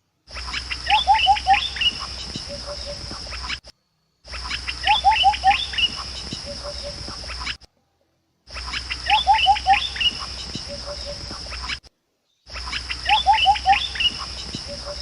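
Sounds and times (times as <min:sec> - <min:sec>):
bird calling rising notes: 0:00.3 - 0:03.7, 0:04.3 - 0:07.7, 0:08.5 - 0:15.0
high insect drone: 0:00.3 - 0:07.6, 0:08.5 - 0:11.8, 0:12.5 - 0:15.0.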